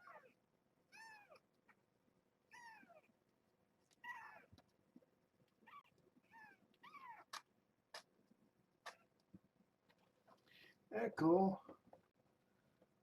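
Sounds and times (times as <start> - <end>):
kittens mewing: 0.0 - 1.4, 2.5 - 3.1, 4.0 - 4.5, 5.6 - 7.4.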